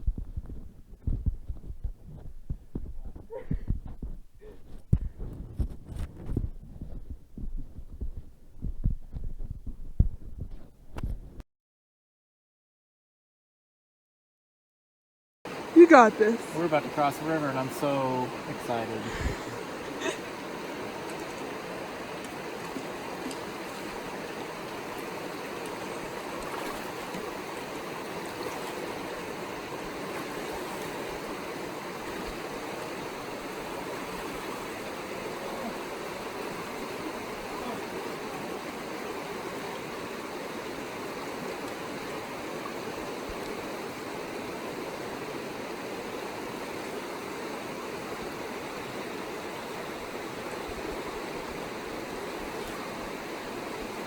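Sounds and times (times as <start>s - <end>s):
creek water rushing: 15.5s - 54.0s.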